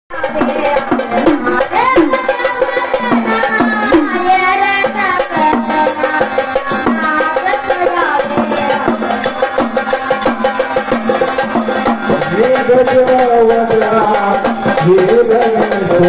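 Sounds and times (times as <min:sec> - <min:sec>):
fast drum beat: 0:00.1 - 0:16.0
high voice singing: 0:00.1 - 0:16.0.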